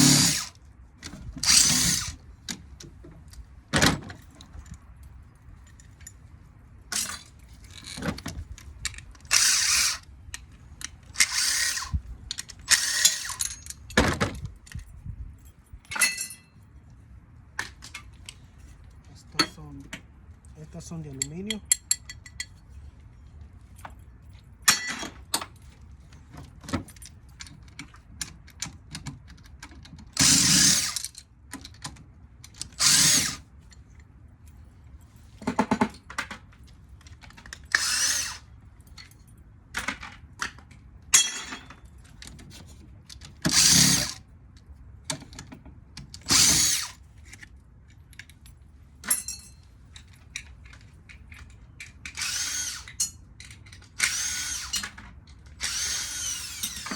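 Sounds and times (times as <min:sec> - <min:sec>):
power drill bursts: 0:00.0 - 0:00.5, 0:01.4 - 0:02.2, 0:11.2 - 0:11.9, 0:12.7 - 0:13.4, 0:30.2 - 0:31.0, 0:32.8 - 0:33.4, 0:37.8 - 0:38.4, 0:43.5 - 0:44.2, 0:46.3 - 0:46.9, 0:52.1 - 0:53.0, 0:54.0 - 0:55.0, 0:55.6 - 0:56.9
metal parts clinking: 0:06.9 - 0:14.0, 0:14.6 - 0:16.6, 0:46.1 - 0:56.9.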